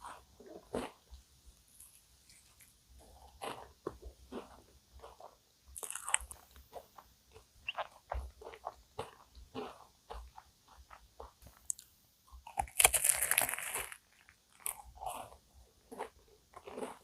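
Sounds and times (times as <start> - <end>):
chewing: 1.8 - 17.0
crunching bites of pastry: 4.3 - 6.8, 7.7 - 17.0.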